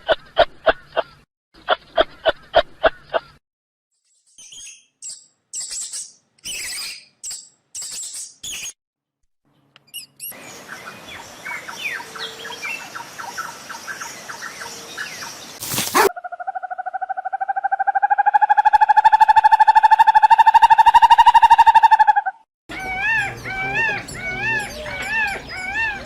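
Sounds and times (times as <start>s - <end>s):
chorus of bird-like chirps: 4.1s - 8.8s, 9.6s - 26.0s
high-pitched squeaky calls: 18.4s - 26.0s.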